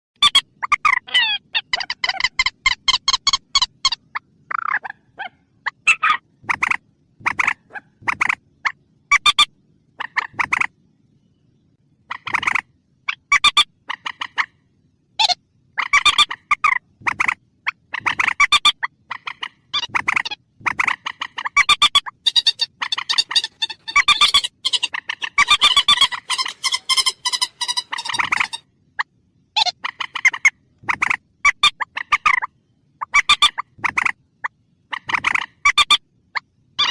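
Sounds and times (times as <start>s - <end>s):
rail bird call harsh notes: 21.4s - 28.6s.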